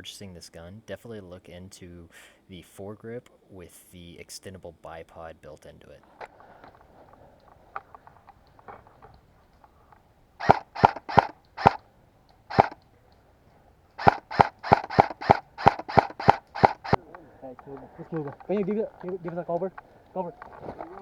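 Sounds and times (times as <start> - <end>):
airsoft rifle shots: 10.4 - 21.0.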